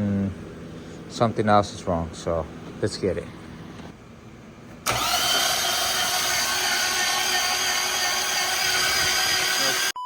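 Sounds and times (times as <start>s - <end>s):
starter motor cranking engine: 4.8s - 9.9s.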